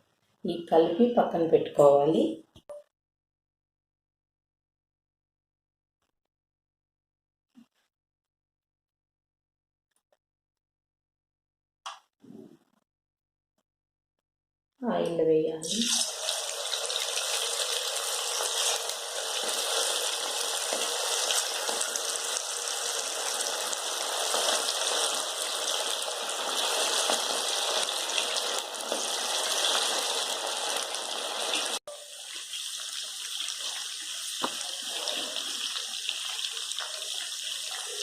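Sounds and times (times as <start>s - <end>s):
chicken sizzling in hot oil: 15.6s - 38.0s.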